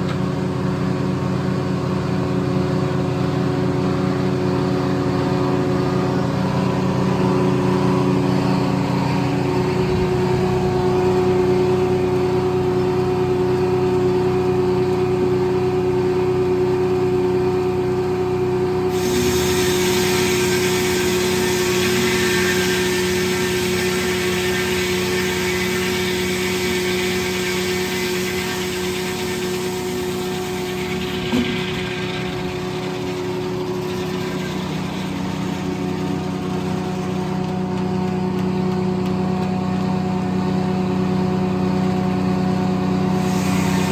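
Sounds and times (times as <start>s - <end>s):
sawmill engine and blade hum: 0.0s - 43.9s
circle saw cutting log hiss: 18.9s - 37.4s, 43.1s - 43.9s.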